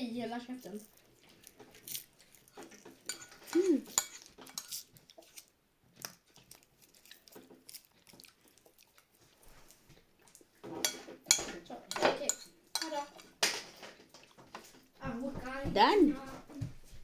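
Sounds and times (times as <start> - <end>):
spoon clinking against bowl: 3.0 - 4.8, 10.8 - 13.3.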